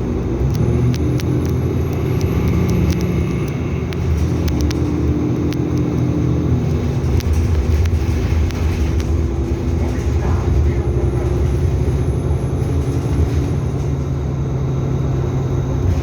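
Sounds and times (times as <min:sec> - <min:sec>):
sharp clicks and rattles: 0:00.0 - 0:14.1
bus engine drone: 0:00.0 - 0:16.0.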